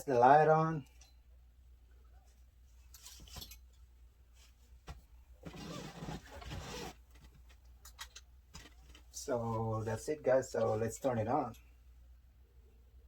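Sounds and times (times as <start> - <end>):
rustling: 4.3 - 7.7.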